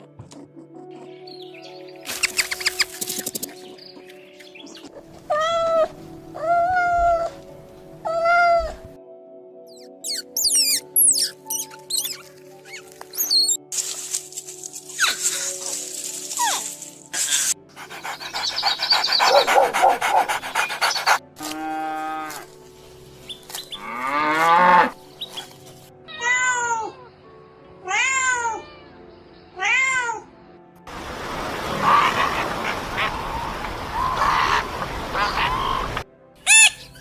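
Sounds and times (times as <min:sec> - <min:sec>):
animal sounds: 0:16.4 - 0:22.5.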